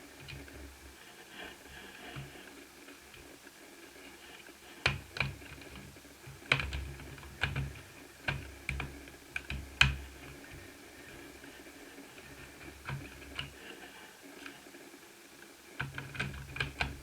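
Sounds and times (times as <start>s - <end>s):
laptop keys clicking: 4.8s - 11.3s, 12.2s - 13.6s, 15.8s - 17.0s.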